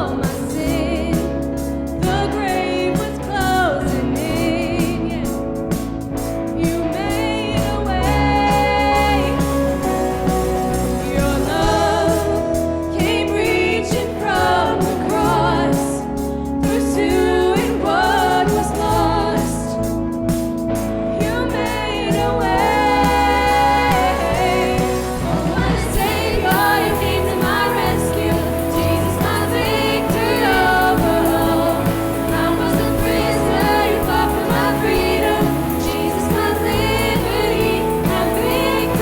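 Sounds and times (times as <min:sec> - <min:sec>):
singers singing: 0:00.0 - 0:39.0
worship band playing: 0:00.0 - 0:39.0.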